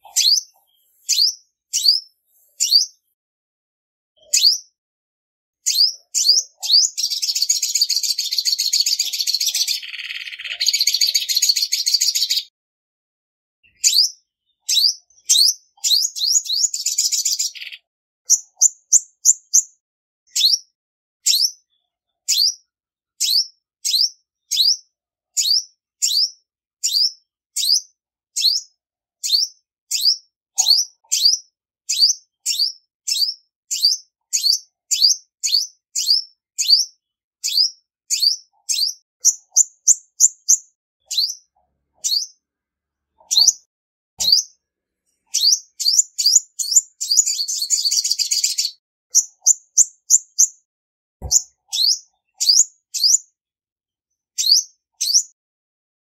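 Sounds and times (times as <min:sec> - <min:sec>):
sunbird chirping: 0:00.0 - 0:03.1, 0:37.4 - 0:42.4, 0:43.2 - 0:43.6, 0:45.3 - 0:50.6, 0:51.2 - 0:53.2.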